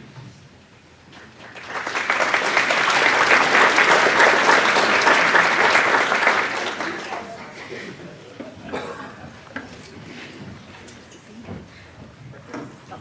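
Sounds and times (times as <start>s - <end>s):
audience applauding: 1.1s - 7.7s.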